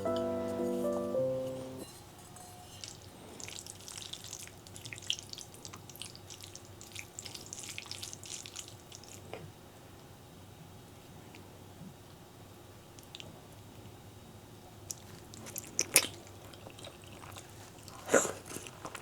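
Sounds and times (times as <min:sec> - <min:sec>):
sticky noodles squelching: 0:03.4 - 0:09.4.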